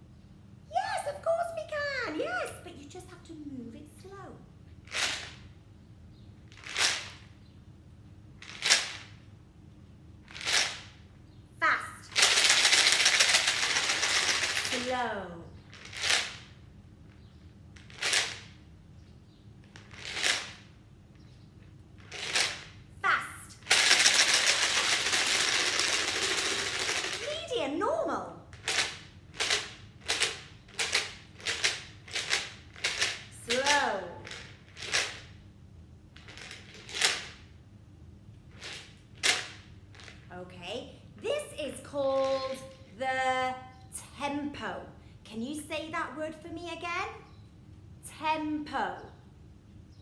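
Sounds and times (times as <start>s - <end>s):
shaker rattling: 6.5s - 7.3s, 10.3s - 11.0s, 11.6s - 16.6s, 22.0s - 27.8s, 28.4s - 35.4s.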